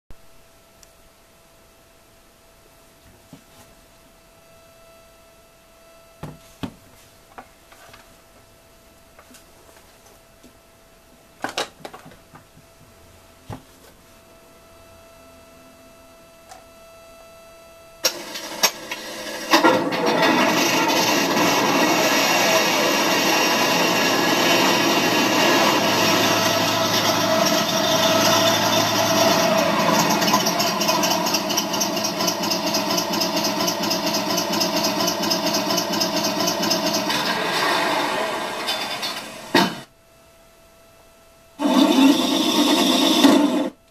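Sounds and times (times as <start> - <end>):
faint electronic whine: 0.1 - 11.4, 12.1 - 19.6, 37.2 - 43.9.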